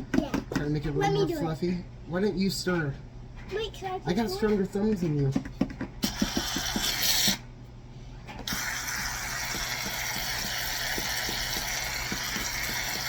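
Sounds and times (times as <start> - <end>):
aerosol can spraying foam: 6.0 - 7.4, 8.5 - 13.0.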